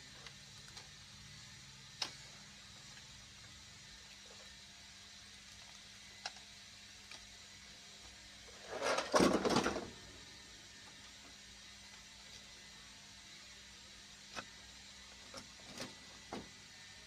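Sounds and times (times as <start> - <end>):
printer parts scraping and rattling: 8.5 - 10.0, 15.2 - 16.5.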